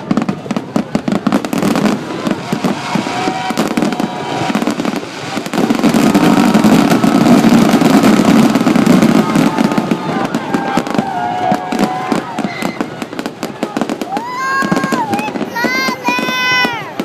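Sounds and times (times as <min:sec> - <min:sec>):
fireworks bangs and crackling: 0:00.0 - 0:17.0.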